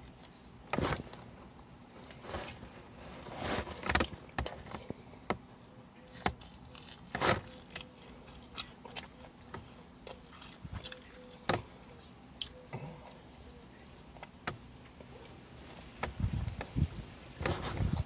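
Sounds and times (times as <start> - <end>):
faint steady hum: 0.0 - 18.0
person biting and chewing: 6.0 - 11.6.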